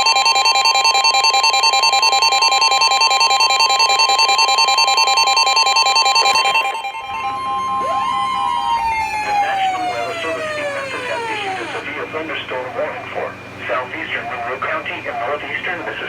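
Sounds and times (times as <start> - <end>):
rapidly pulsing electronic beep: 0.0 - 11.8
siren winding up: 0.0 - 11.9
steady alarm tone: 0.0 - 11.9.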